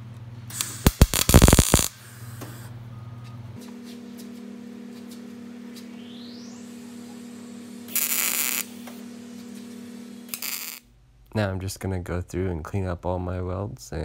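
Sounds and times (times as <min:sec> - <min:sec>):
electrical hum: 0:00.0 - 0:14.0
tack weld crackling: 0:00.5 - 0:02.0, 0:07.9 - 0:08.7, 0:10.3 - 0:10.8.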